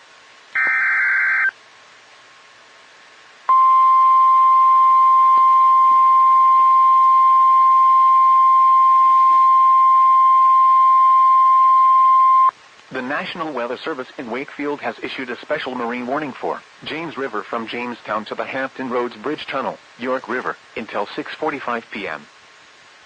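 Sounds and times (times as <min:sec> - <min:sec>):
quiet hiss: 0:00.0 - 0:11.8, 0:12.5 - 0:23.0
steady warning alarm tone: 0:00.6 - 0:01.5
warbling electronic data screech: 0:00.6 - 0:01.5.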